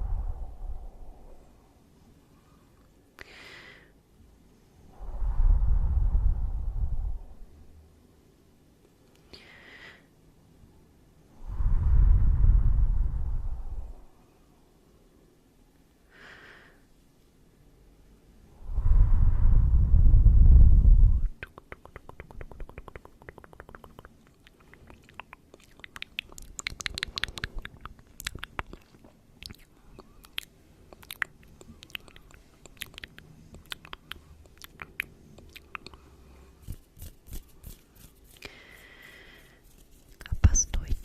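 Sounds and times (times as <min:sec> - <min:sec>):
wet mouth clicks and smacks: 0:21.2 - 0:37.4
heavy breathing into microphone: 0:38.4 - 0:39.8.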